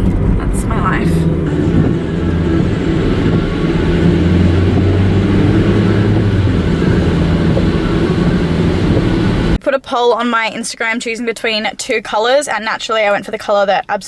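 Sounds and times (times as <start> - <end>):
car cabin road and engine noise: 0.0 - 9.6.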